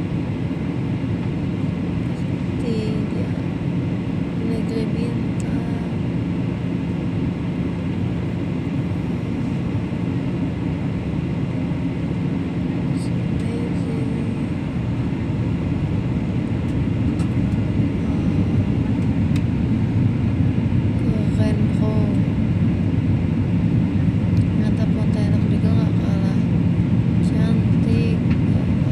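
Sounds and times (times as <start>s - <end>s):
airliner cabin drone: 0.0s - 28.9s.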